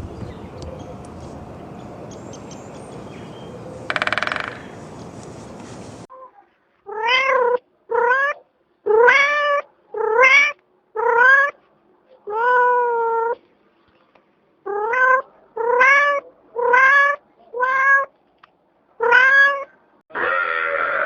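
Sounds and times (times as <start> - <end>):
cat meowing: 6.9 - 11.6, 12.3 - 13.4, 14.7 - 18.1, 19.0 - 19.7.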